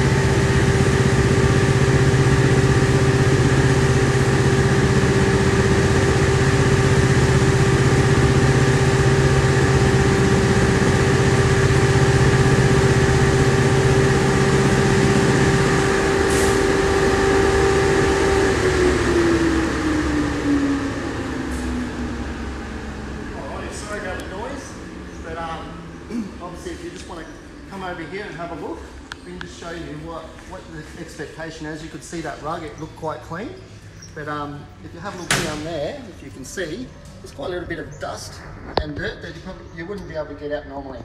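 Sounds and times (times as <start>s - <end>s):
motor whine: 0.0s - 26.4s
low hum: 0.0s - 41.0s.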